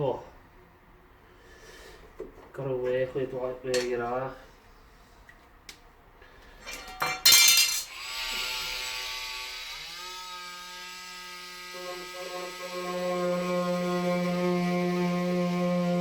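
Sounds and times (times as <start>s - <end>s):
sharp metallic clatter: 6.8s - 8.0s.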